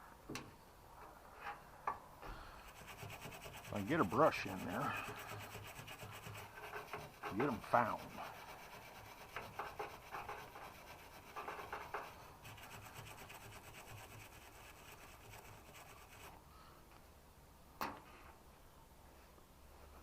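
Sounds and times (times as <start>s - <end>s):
brush scrubbing metal: 2.6s - 16.4s.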